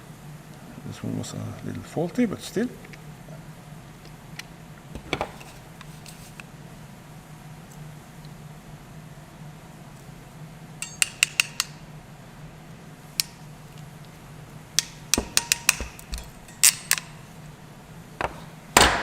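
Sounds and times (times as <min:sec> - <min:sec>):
ratcheting crimper clicks: 0:14.8 - 0:17.2.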